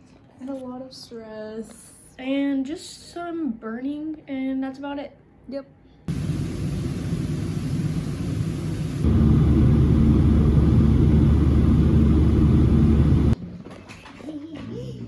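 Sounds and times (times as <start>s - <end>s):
loud low rumbling: 6.1s - 13.4s.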